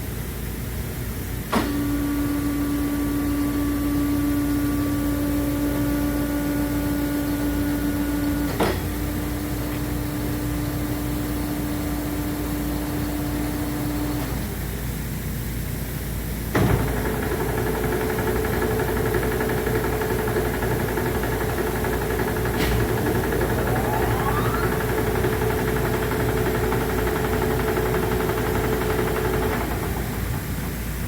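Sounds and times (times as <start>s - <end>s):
grinder motor hum and whine: 16.6s - 30.9s
whine rising in pitch: 22.8s - 27.6s.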